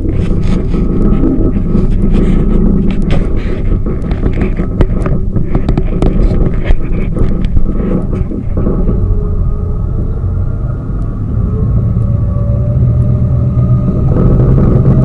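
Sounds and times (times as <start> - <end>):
sharp clicks and knocks: 0.0 - 9.4
boat motor rumbling: 0.0 - 15.0.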